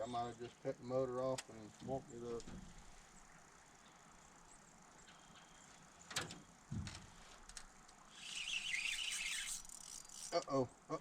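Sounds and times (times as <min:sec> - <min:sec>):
low thump: 0:06.7 - 0:07.1
fishing reel rattling: 0:08.1 - 0:10.4.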